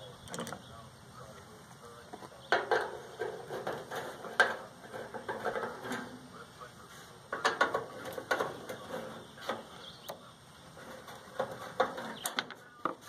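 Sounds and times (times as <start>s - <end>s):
hand tools clicking and knocking: 2.5s - 6.2s, 7.3s - 10.2s, 10.8s - 13.0s.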